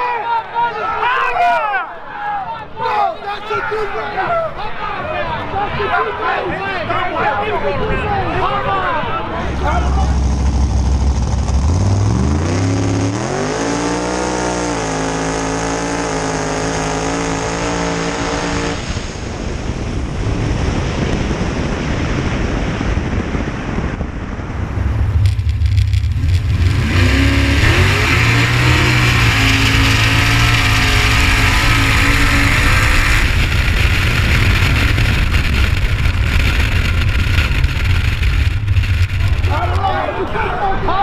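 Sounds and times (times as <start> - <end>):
loud rush of noise: 0.0 - 41.0
car engine accelerating: 9.3 - 20.2, 23.8 - 40.4.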